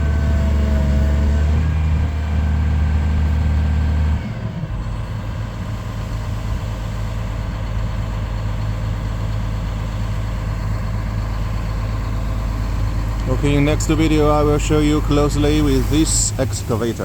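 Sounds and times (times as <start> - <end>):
excavator diesel engine running: 0.0 - 17.0.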